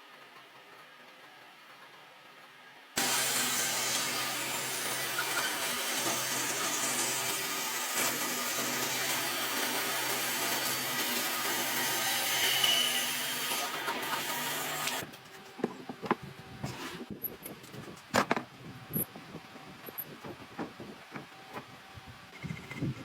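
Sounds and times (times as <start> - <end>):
power tool cutting wood: 3.0 - 15.1.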